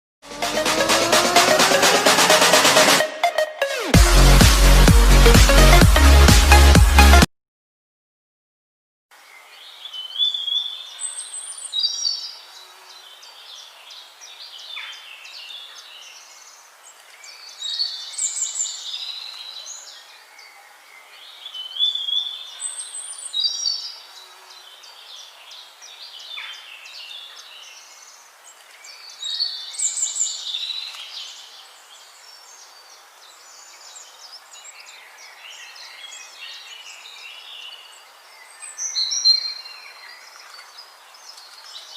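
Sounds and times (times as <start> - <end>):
songbird singing: 9.2 - 41.9.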